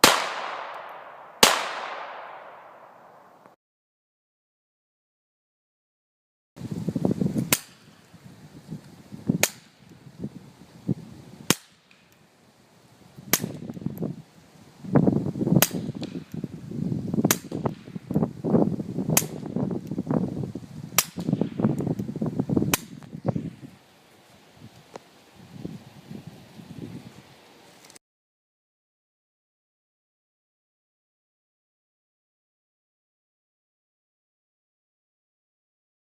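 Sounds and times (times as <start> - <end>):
suppressed gunshots: 0.0 - 3.3.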